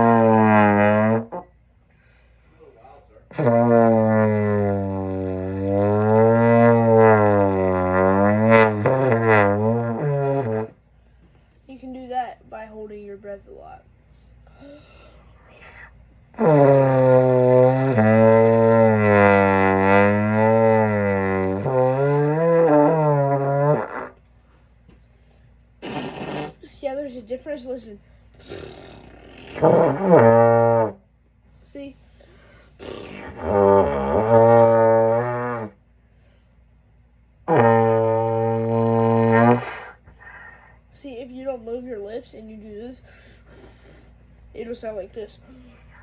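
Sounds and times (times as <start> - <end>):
bass trombone low notes: 0.0 - 1.6, 3.3 - 10.8, 16.3 - 24.2, 29.6 - 31.1, 33.0 - 35.8, 37.4 - 40.0.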